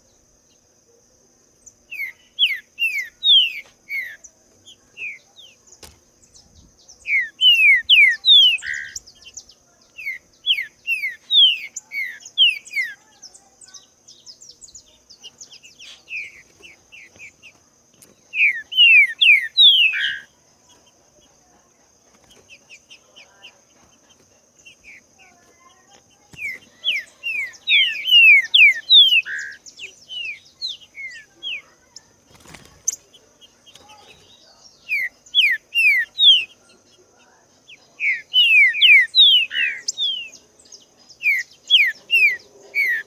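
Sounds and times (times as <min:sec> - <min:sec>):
bird whistling song: 0:01.9 - 0:20.3, 0:24.6 - 0:37.0, 0:37.7 - 0:43.0.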